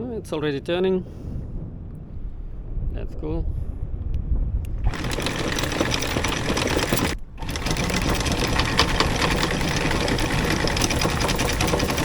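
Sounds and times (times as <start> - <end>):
boat engine running: 4.8 - 12.0.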